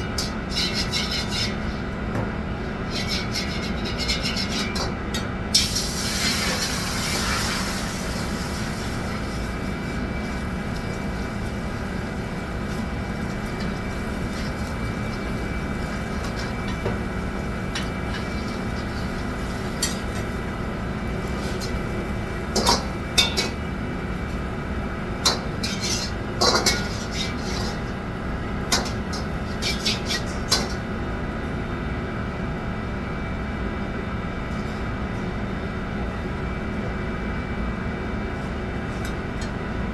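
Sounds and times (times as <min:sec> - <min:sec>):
steady machine hum: 0:00.0 - 0:39.9
utensils clinking against pots: 0:22.6 - 0:23.6, 0:25.2 - 0:27.9, 0:28.7 - 0:30.8.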